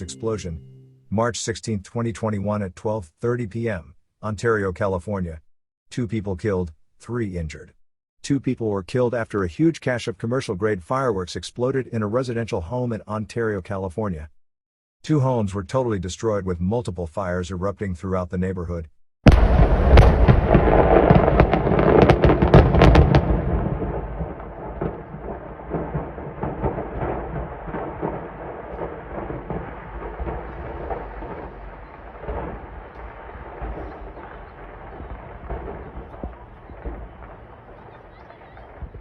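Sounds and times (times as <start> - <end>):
fireworks bangs and crackles: 19.3 - 39.0
low rumble with pops: 19.3 - 39.0.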